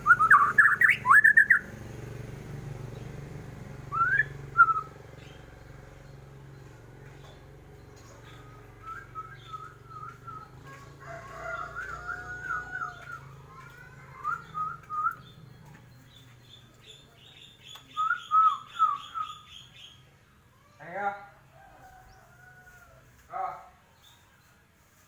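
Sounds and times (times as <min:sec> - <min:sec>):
bird singing whistled phrases: 0:00.0 - 0:01.6, 0:03.9 - 0:05.0, 0:08.2 - 0:10.5, 0:14.2 - 0:15.4, 0:17.4 - 0:20.0.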